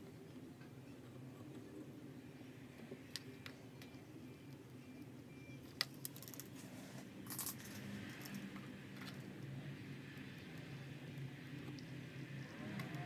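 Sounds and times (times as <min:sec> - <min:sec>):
steady low hum: 0:00.0 - 0:13.0
small metal parts clicking: 0:05.7 - 0:06.6, 0:07.2 - 0:08.4.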